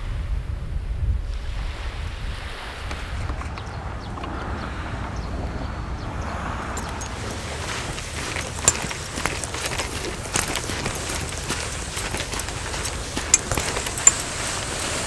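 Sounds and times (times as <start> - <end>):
light clicks and knocks: 3.3 - 15.0.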